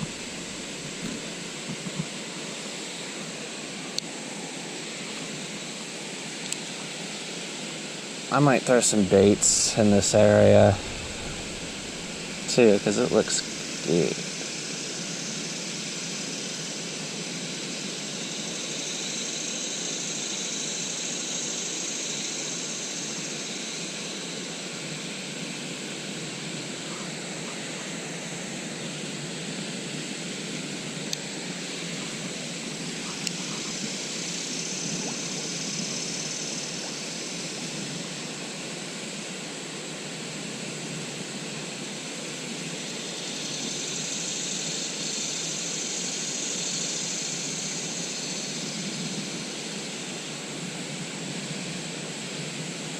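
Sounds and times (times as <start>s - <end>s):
stream water rushing: 0.0s - 15.8s.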